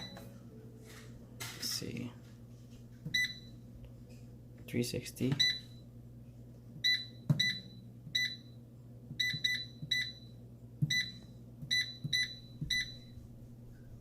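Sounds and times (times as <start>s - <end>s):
control panel beeping: 9.2s - 10.3s, 10.9s - 13.0s.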